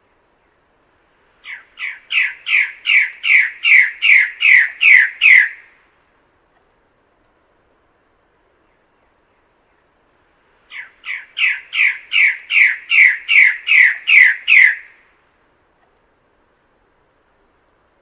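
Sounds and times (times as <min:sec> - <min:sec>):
bird calling harsh notes: 0:01.4 - 0:05.7, 0:10.7 - 0:15.0.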